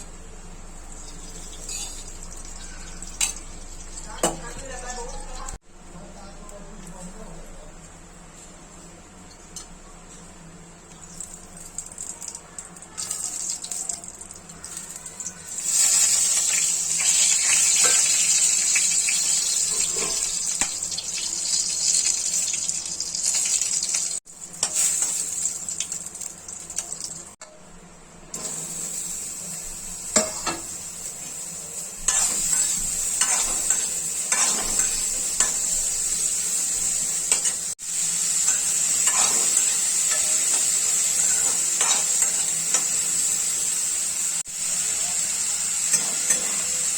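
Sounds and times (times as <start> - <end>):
food sizzling in a pan: 0.0 - 5.6, 10.8 - 27.4, 28.3 - 46.9
spatula scraping a pan: 19.0 - 20.4, 38.5 - 42.8.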